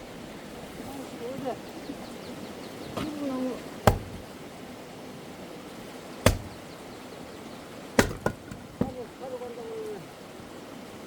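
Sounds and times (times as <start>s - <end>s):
axe splitting firewood: 3.8s - 4.3s, 6.2s - 6.6s, 8.0s - 9.0s.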